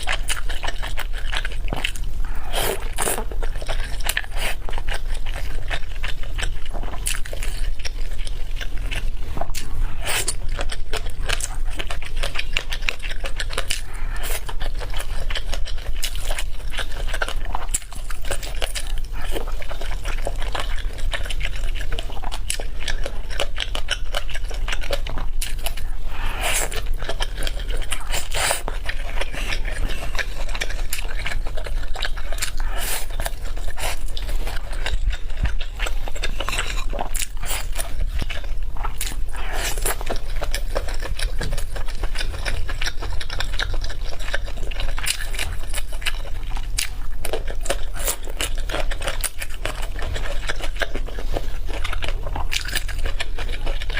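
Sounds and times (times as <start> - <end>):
chewing and crunching food: 0.0 - 53.9
steady low hum: 0.0 - 53.9.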